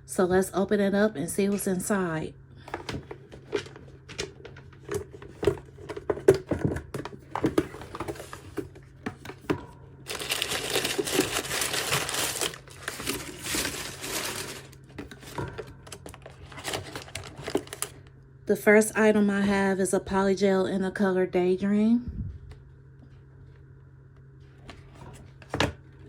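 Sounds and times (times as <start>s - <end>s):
packaging crinkling and tearing: 10.1s - 18.1s.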